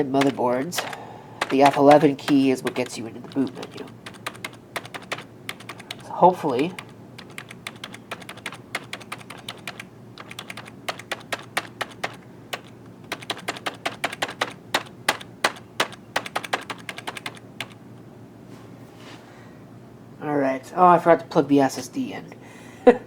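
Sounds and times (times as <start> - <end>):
keyboard key clicking rapidly: 0.0 - 17.8.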